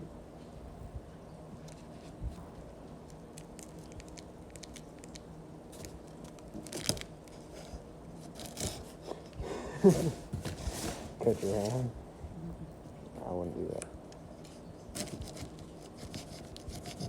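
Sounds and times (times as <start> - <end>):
packaging ticks and crackles: 2.9 - 7.6
packaging tearing: 5.8 - 7.4.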